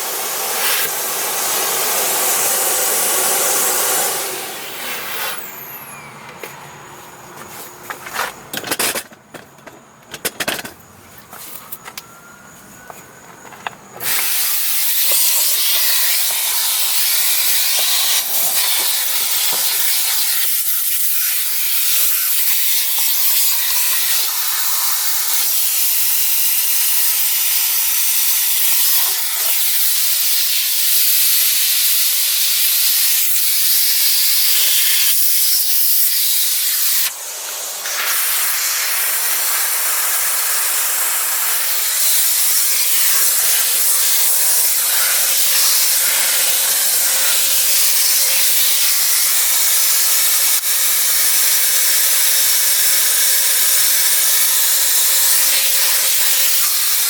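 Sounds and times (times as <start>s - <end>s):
vacuum cleaner suction hiss: 0.0s - 6.6s, 14.0s - 57.0s
clicks and knocks: 7.9s - 12.1s.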